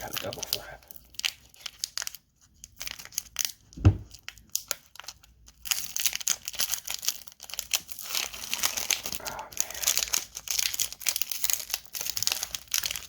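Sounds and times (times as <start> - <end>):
foil wrapper crinkling: 0.0 - 13.0
dull thump: 3.8 - 4.1.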